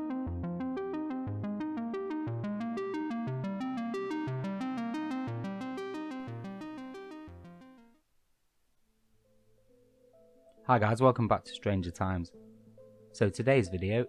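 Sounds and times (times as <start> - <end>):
synthesizer arpeggio over bass: 0.0 - 7.8.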